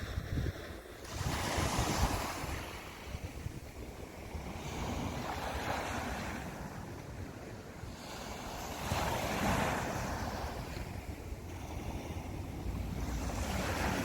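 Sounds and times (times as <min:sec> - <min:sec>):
sea waves breaking: 0:00.0 - 0:14.0
wind buffeting microphone: 0:00.0 - 0:14.0.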